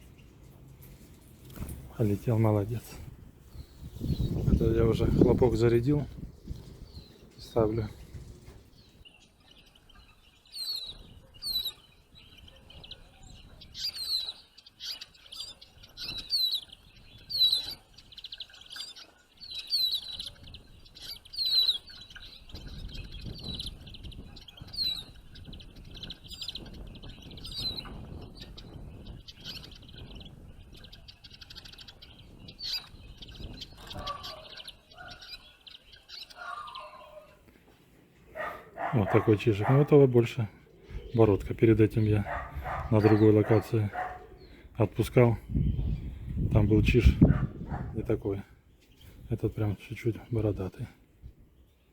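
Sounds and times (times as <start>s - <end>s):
faint low wind rumble: 0.0s - 9.0s, 21.9s - 35.6s, 37.7s - 51.6s
songbirds chirping: 0.0s - 51.9s.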